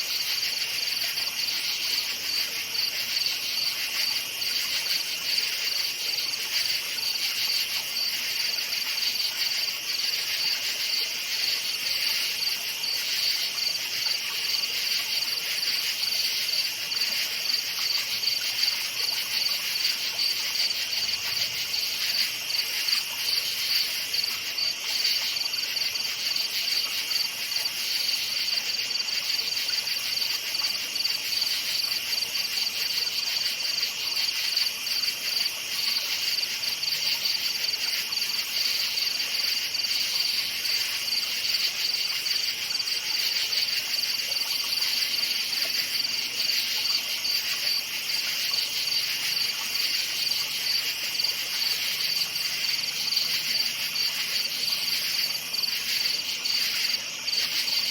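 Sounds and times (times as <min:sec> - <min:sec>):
crickets chirping: 0:00.0 - 0:57.9.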